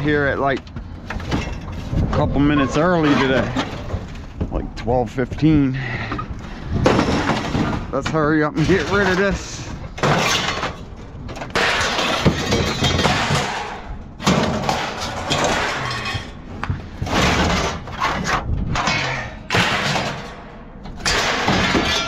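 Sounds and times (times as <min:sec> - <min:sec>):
junk crashing and clattering: 0:00.0 - 0:04.7, 0:05.9 - 0:22.0
glass shattering: 0:10.0 - 0:10.8, 0:11.5 - 0:16.4, 0:18.8 - 0:22.0.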